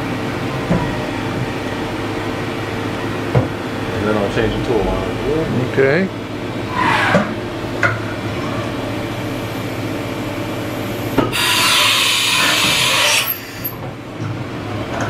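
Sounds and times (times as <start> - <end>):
machine running hum: 0.0 - 15.0
compressed air hissing: 11.0 - 13.6.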